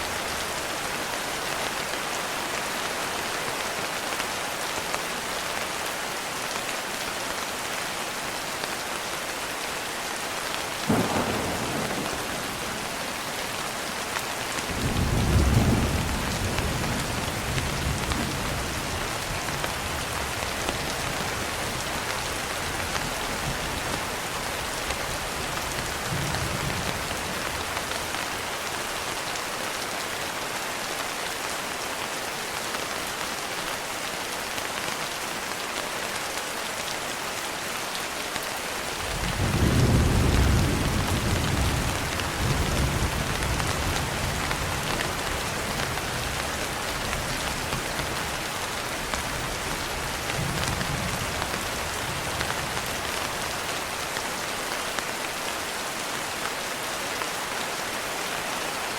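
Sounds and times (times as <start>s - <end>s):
steady rain falling: 0.0s - 58.9s
thunder crack: 10.9s - 13.2s
rolling thunder rumble: 10.9s - 13.9s.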